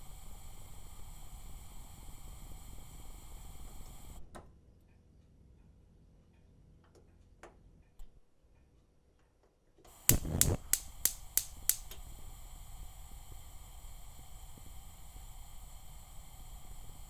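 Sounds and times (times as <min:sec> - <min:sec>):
gas hissing: 0:09.9 - 0:17.0
electric igniter clicking: 0:10.0 - 0:12.1.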